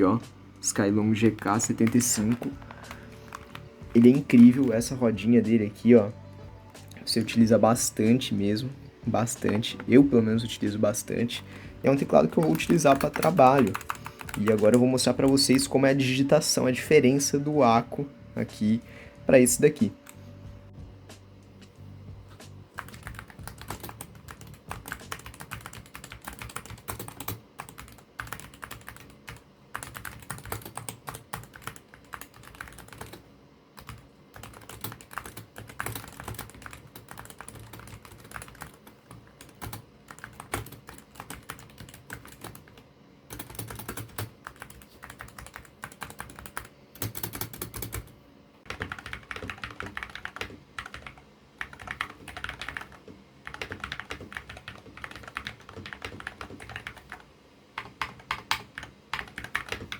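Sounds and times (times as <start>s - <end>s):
fast typing key clacks: 12.0s - 15.7s, 22.8s - 33.2s, 33.8s - 48.1s, 48.7s - 57.2s, 57.8s - 59.9s.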